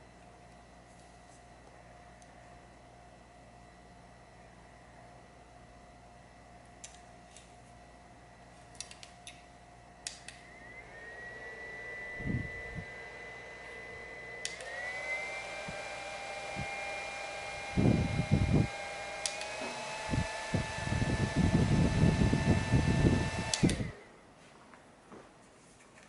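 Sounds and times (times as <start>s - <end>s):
handheld fan whining: 6.8s - 24.2s
switch click: 14.4s - 14.8s, 19.2s - 19.6s.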